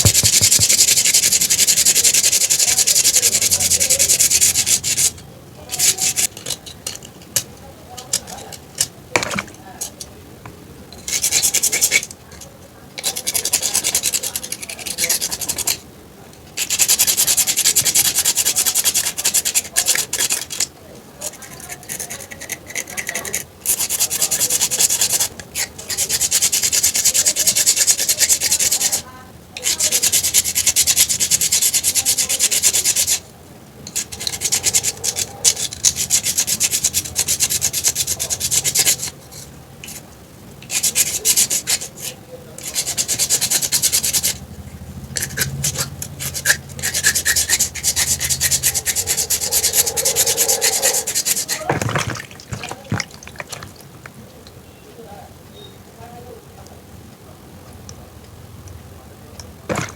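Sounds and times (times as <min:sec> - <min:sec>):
dry rubbing or scraping: 0:00.0 - 0:06.6, 0:13.0 - 0:15.8, 0:33.8 - 0:54.2, 0:59.6 - 0:59.9.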